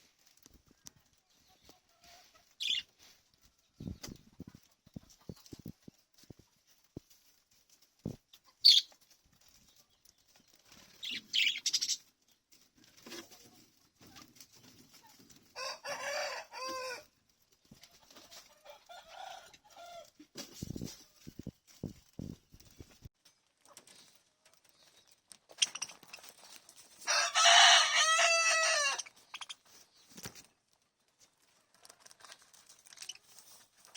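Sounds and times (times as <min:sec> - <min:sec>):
parrots chirping: 0:08.6 - 0:08.9, 0:11.0 - 0:12.0, 0:28.6 - 0:29.6.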